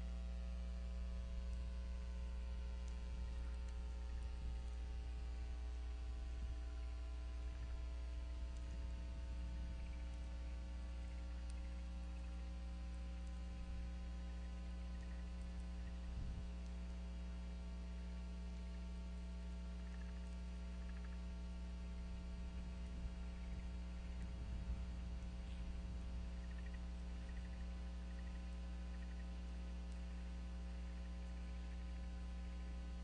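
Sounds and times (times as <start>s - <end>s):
electrical mains hum: 0.0s - 33.0s
faint ticks: 0.0s - 33.0s
low hiss: 0.0s - 33.0s.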